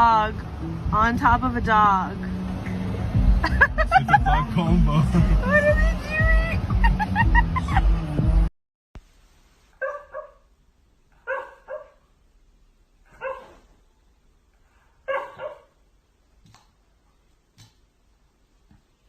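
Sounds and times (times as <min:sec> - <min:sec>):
dog barking: 0:09.8 - 0:10.5, 0:11.2 - 0:12.0, 0:13.1 - 0:13.6, 0:15.0 - 0:15.8.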